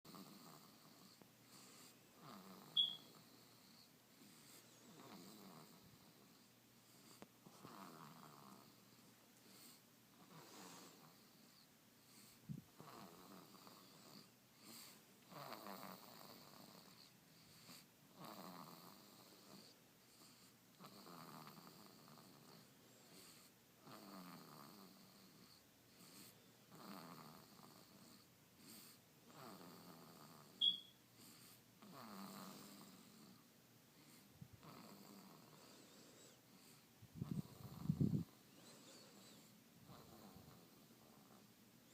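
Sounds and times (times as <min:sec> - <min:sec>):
faint slow snoring: 0:00.1 - 0:30.6, 0:31.2 - 0:41.5
sharp high-pitched squeak: 0:02.8 - 0:03.1, 0:30.6 - 0:31.0.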